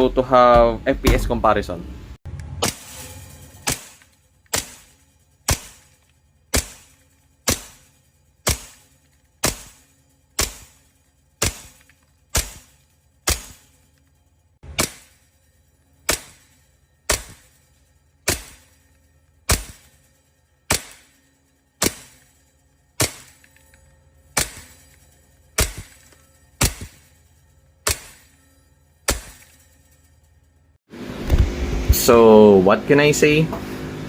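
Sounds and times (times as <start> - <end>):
airsoft pistol shots: 3.6 - 4.9, 5.5 - 5.9, 6.5 - 7.8, 8.5 - 9.8, 10.4 - 10.8, 11.4 - 13.7, 14.6 - 15.2, 16.1 - 16.5, 17.1 - 17.5, 18.3 - 18.7, 19.5 - 19.9, 20.7 - 21.1, 21.8 - 22.2, 23.0 - 23.5, 24.4 - 24.8, 25.6 - 26.0, 26.6 - 27.0, 27.9 - 28.3, 29.1 - 29.5.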